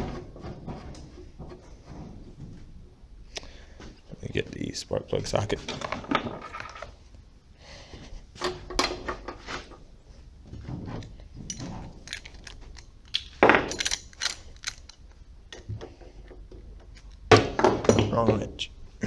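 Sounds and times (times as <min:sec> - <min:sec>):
metal hand tools clinking: 0:11.5 - 0:15.2.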